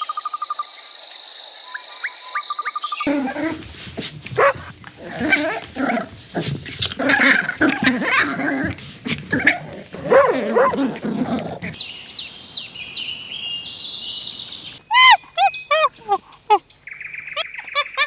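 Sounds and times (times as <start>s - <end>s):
birds chirping: 0.0s - 3.2s, 3.9s - 18.0s
dog whining and barking: 4.4s - 6.1s, 9.3s - 10.9s, 14.9s - 16.6s.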